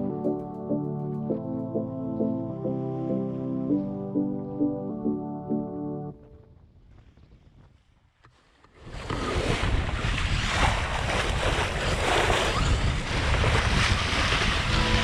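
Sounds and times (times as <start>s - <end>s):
wind buffeting microphone: 6.2s - 15.0s
rushing sea water: 8.8s - 15.0s.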